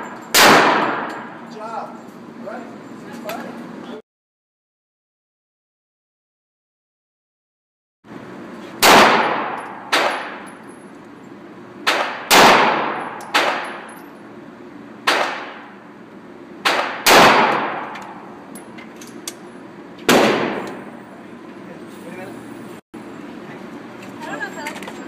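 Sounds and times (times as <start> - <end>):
handgun shots echoing: 0.0 - 1.4, 8.8 - 10.6, 11.9 - 13.9, 15.1 - 15.7, 16.6 - 18.2, 20.1 - 20.8.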